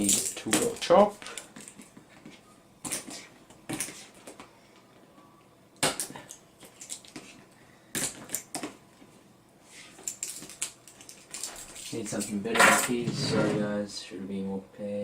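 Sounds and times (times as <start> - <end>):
keys rasping across packing tape: 9.9 - 12.4.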